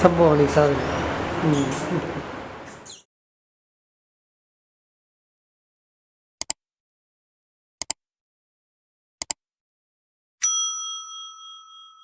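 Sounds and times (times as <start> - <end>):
sharp double clicks: 7.8 - 8.0, 9.2 - 9.4
bright bell ding: 10.4 - 12.0.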